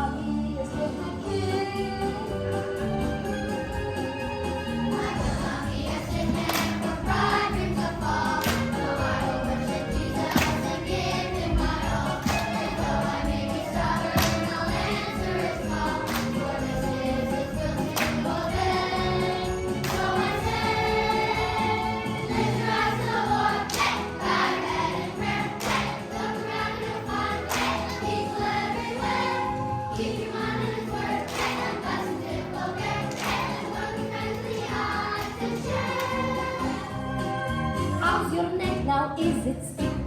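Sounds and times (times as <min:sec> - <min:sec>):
children's choir singing: 0:00.0 - 0:38.1
backing track: 0:00.0 - 0:40.0.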